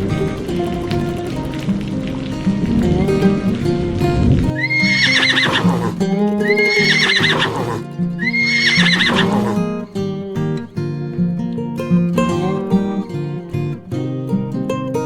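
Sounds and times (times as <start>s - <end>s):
background music: 0.0s - 11.6s
animal call wavering in pitch: 4.6s - 9.8s.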